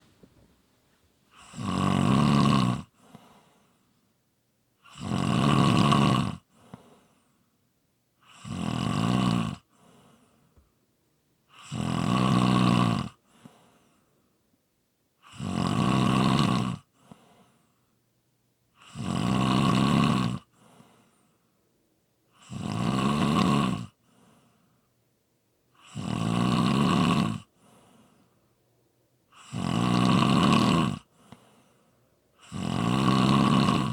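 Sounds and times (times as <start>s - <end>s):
loud snoring: 1.3s - 3.0s, 4.8s - 6.5s, 8.2s - 9.7s, 11.5s - 13.2s, 15.2s - 16.9s, 18.8s - 20.5s, 22.3s - 24.0s, 25.8s - 27.5s, 29.3s - 31.4s, 32.4s - 33.9s
faint breath: 2.9s - 4.1s, 6.5s - 7.6s, 9.7s - 10.8s, 13.2s - 14.4s, 16.9s - 18.0s, 20.5s - 21.6s, 24.0s - 25.0s, 27.5s - 28.6s, 31.0s - 32.5s.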